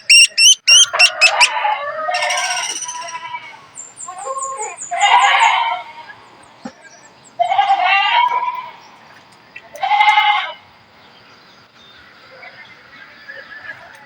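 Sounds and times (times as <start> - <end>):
nestlings harsh begging calls: 0.0 - 5.9.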